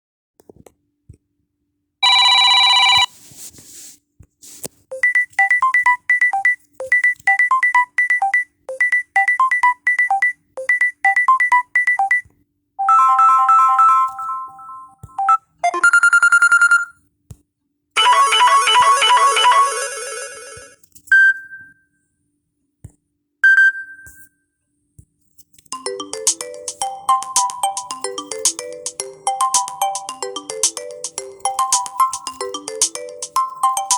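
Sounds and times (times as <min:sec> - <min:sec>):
phone ringtones: 0:02.0 - 0:03.1, 0:05.0 - 0:12.2, 0:12.8 - 0:17.0, 0:18.0 - 0:21.8, 0:25.8 - 0:33.9.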